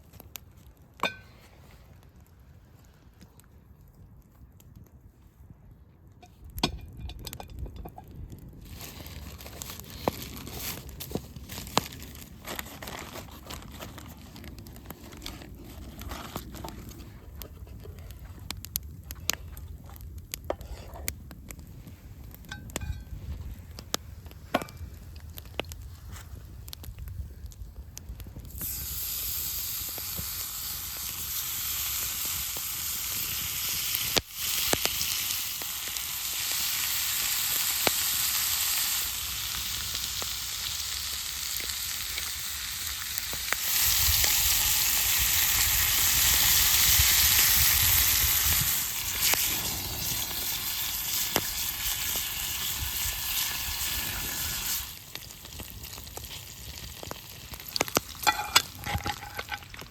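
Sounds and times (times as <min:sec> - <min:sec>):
food sizzling in a pan: 0:28.6 - 0:55.0, 0:57.8 - 0:59.9.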